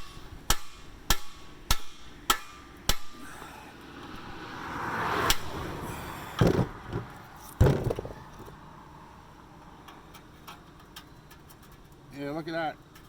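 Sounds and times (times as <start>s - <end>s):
hammer striking metal: 0.0s - 3.3s.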